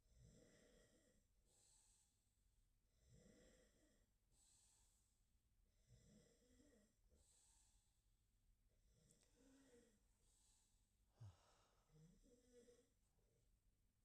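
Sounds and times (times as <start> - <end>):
dog snoring: 0.1 - 2.0, 3.0 - 4.9, 5.8 - 7.7.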